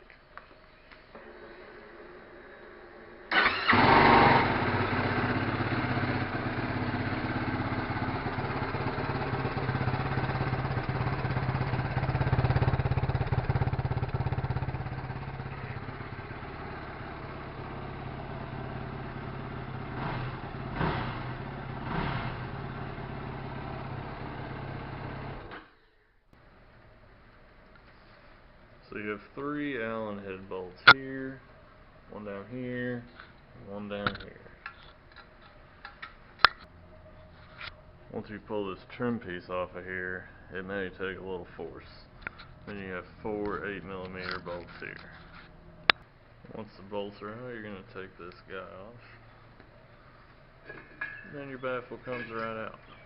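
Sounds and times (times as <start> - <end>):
engine shutting off: 1.1 - 25.7
engine revving: 3.3 - 25.6
engine starting and idling: 3.3 - 25.8.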